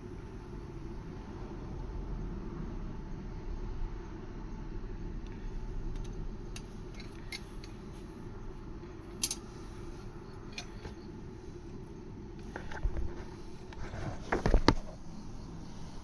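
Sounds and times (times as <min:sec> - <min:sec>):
steady low rumble: 0:00.0 - 0:16.0
metallic clicks of copper pipe: 0:09.2 - 0:09.4, 0:10.5 - 0:11.0.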